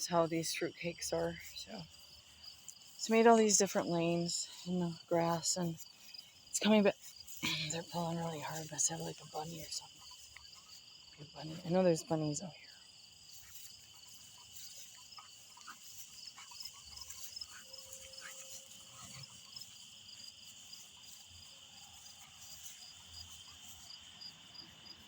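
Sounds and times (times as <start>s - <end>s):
light ticks and rustles: 0.0s - 24.4s
insects chirping: 0.0s - 25.0s
insects trilling: 0.0s - 25.0s.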